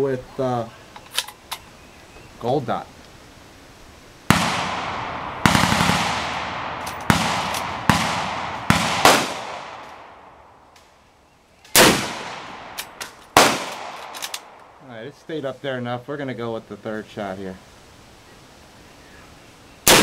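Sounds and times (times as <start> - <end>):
gunshots echoing: 4.3 - 10.6, 11.7 - 14.6.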